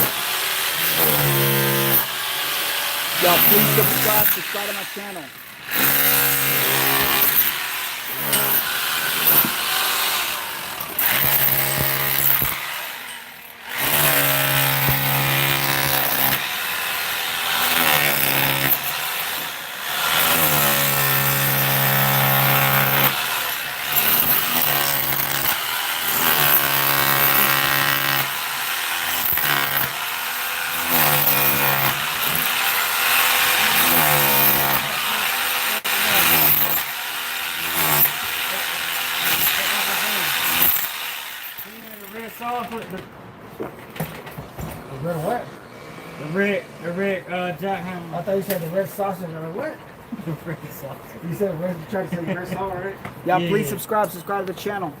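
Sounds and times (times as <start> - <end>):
power tool running: 0.0 - 42.8.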